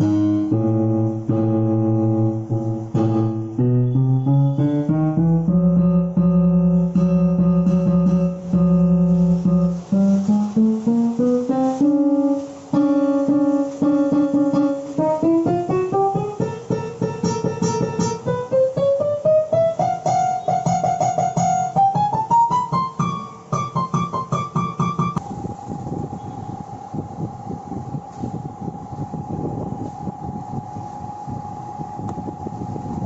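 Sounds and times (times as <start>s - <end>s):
keyboard plucked guitar-like melody: 0.0s - 25.2s.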